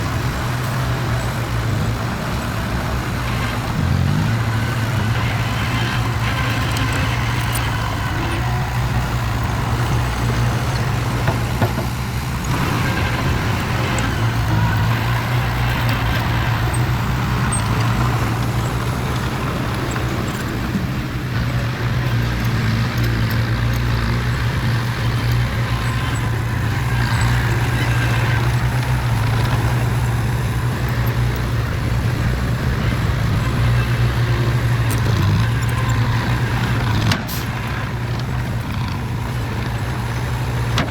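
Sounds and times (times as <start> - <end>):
heavy vehicle engine droning: 0.0 - 40.9.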